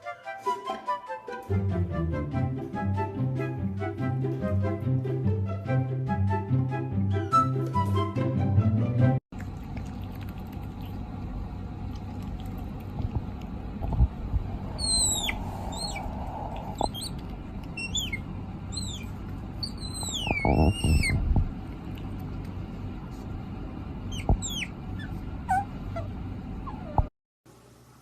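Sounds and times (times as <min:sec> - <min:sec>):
young animal peeping: 0:14.2 - 0:21.3, 0:24.0 - 0:27.1.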